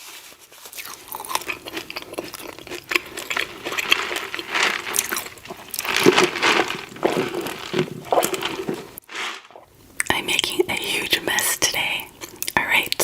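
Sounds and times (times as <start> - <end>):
wet smacking chewing: 0.7 - 10.1.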